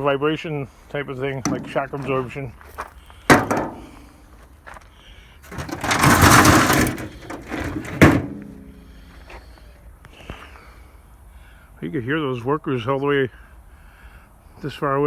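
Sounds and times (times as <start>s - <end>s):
sheet metal knocking: 1.4s - 2.2s, 3.3s - 4.0s
metal scraping rattle: 1.4s - 2.4s, 3.3s - 4.2s, 5.4s - 9.0s
metal clank ringing: 3.3s - 4.0s, 5.5s - 8.9s.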